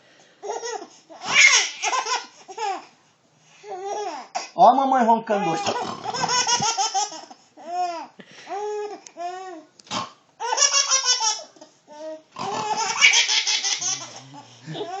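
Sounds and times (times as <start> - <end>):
baby laughing and squealing: 0.4 - 2.8, 5.4 - 8.0, 12.5 - 15.0
person imitating snoring: 5.7 - 6.3, 12.4 - 13.0, 13.9 - 15.0.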